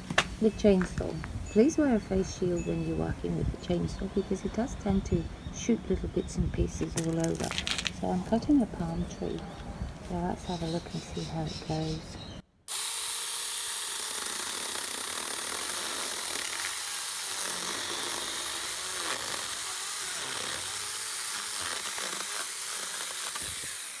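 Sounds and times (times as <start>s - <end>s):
mini chainsaw cutting wood: 12.7s - 24.0s.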